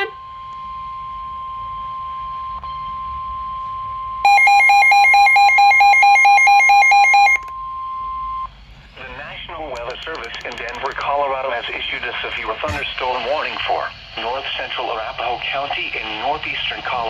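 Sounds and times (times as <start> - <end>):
rapid pulsing alarm beeps: 3.8 - 8.6
steady alarm tone: 4.2 - 7.4.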